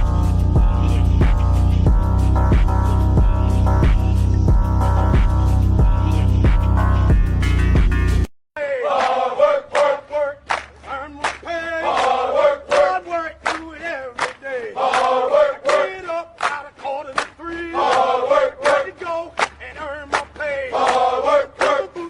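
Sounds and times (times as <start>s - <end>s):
drum beat: 0.0s - 8.2s
bass: 0.0s - 8.3s
chanted vocals: 8.6s - 22.0s.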